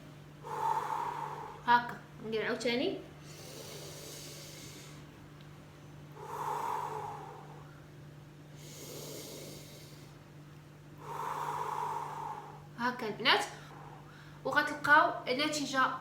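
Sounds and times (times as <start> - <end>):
woman breathing deeply: 0.0 - 1.7, 3.2 - 5.1, 6.1 - 10.2, 11.0 - 12.8, 13.5 - 14.4.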